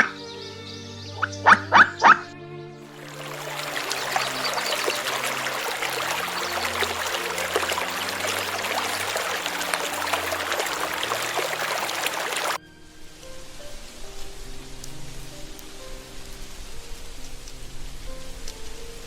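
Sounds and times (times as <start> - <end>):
water running with splashes: 2.9 - 12.6.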